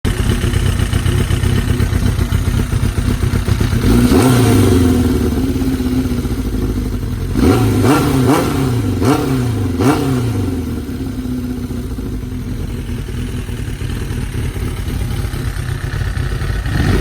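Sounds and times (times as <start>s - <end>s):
motorcycle engine idling and revving: 0.0s - 17.0s.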